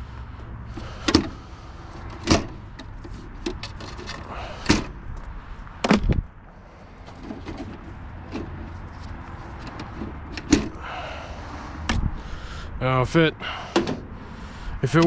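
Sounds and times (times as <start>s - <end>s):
scrap metal clanking: 6.9s - 10.8s.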